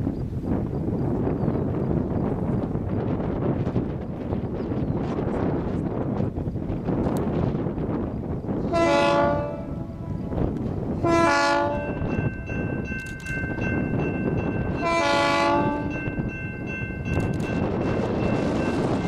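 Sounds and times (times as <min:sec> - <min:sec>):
locomotive air horn blasts: 0:08.6 - 0:12.1, 0:14.8 - 0:16.0
steady high tone: 0:09.4 - 0:19.0.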